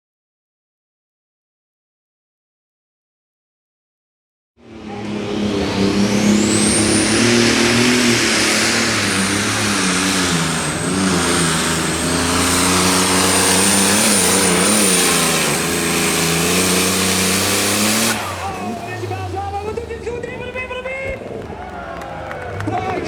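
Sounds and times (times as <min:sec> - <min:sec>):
turbo whine: 0:04.6 - 0:20.9
diesel engine running flat out: 0:04.6 - 0:23.0.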